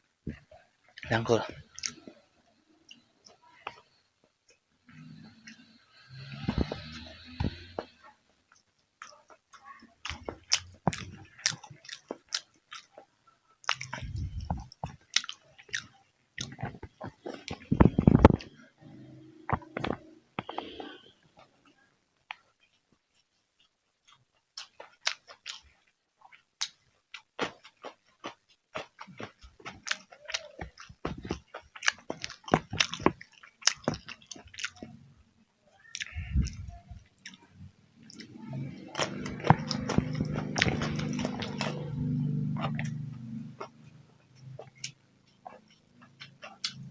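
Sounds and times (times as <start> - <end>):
person chewing crunchy food: 0.3 - 3.8, 5.0 - 21.1, 22.3 - 35.1, 35.8 - 46.9
wet mouth clicks: 1.0 - 2.2, 5.5 - 7.9, 13.6 - 21.0, 26.3 - 35.0, 36.0 - 46.9.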